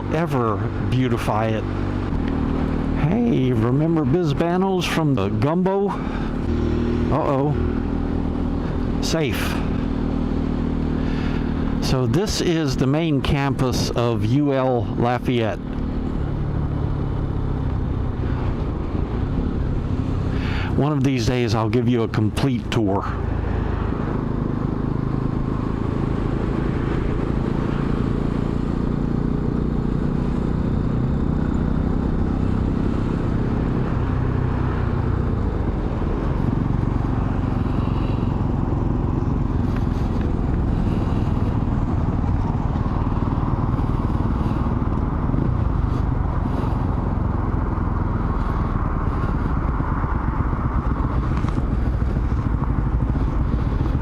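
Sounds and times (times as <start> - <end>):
motorcycle engine running: 0.0 - 54.0
wind noise on microphone: 37.8 - 54.0.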